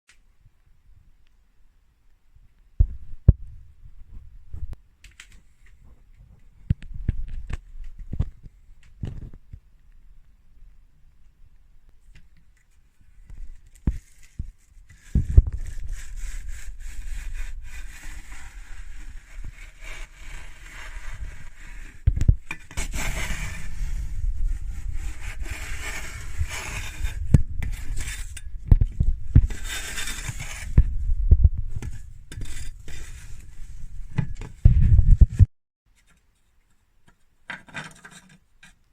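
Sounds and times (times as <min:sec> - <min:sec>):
scraping inside metal flue pipe: 0:13.8 - 0:35.0
low rumble: 0:30.6 - 0:32.9.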